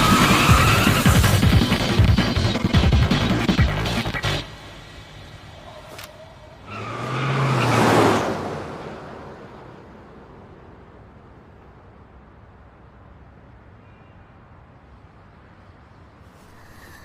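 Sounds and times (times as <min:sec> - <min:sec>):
vehicle passing by: 0:04.4 - 0:11.3.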